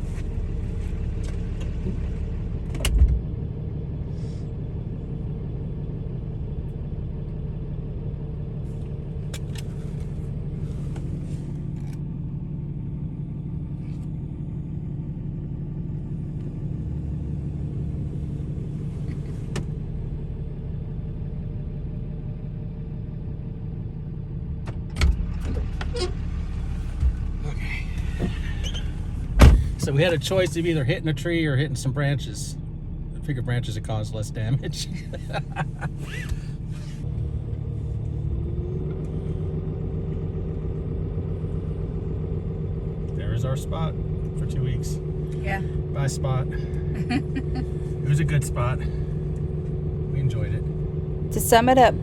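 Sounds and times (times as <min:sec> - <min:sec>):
engine and road rumble: 0:00.0 - 0:52.0
loud thump: 0:29.3 - 0:30.0.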